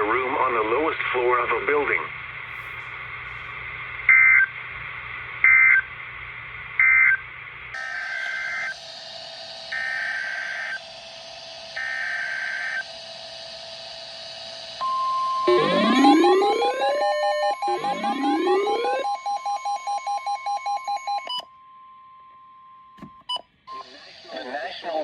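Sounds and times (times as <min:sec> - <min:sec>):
radio hiss: 0:23.8 - 0:25.0.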